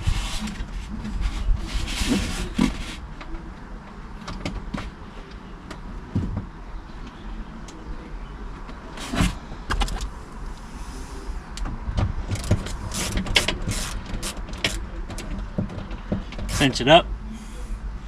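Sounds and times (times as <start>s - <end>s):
metal and plastic parts knocking: 11.7s - 16.6s.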